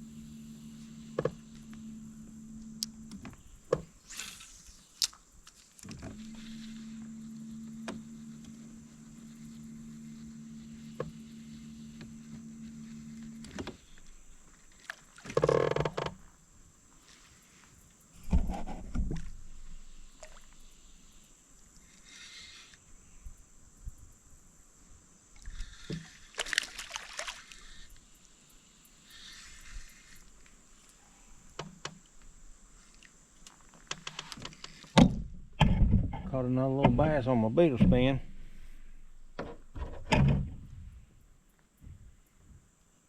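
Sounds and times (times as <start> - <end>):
electric boat motor humming: 0.0 - 23.5, 25.4 - 26.8, 27.4 - 32.9, 33.5 - 41.0
rustling on boat: 0.0 - 43.0
thumps on boat: 35.0 - 38.4, 39.3 - 40.7.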